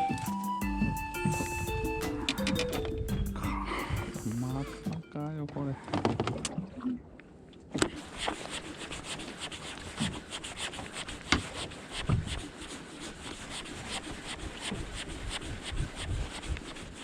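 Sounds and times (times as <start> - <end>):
rubbing and scraping: 7.8 - 17.0.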